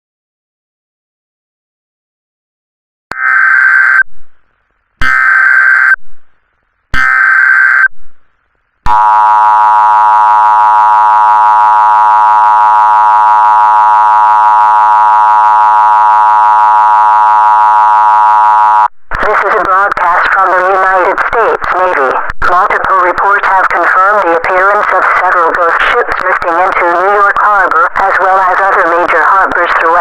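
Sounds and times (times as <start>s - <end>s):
two-tone attention signal: 8.9s - 15.5s.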